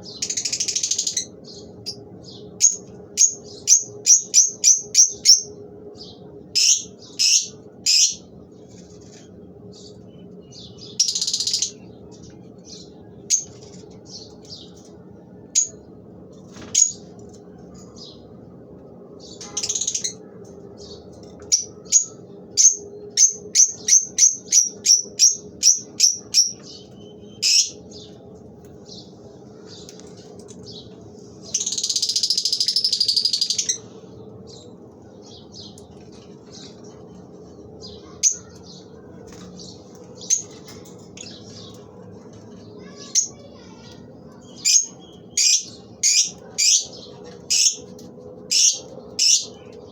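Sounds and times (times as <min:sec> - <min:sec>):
harsh bird chatter: 0:00.0 - 0:18.4, 0:19.2 - 0:49.9.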